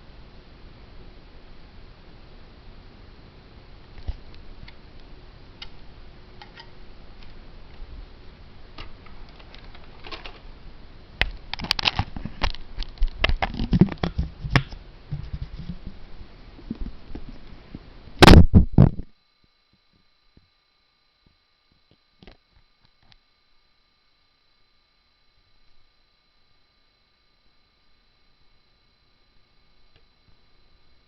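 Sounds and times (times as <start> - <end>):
plastic toy rifle clicks and rattles: 8.8 - 10.4.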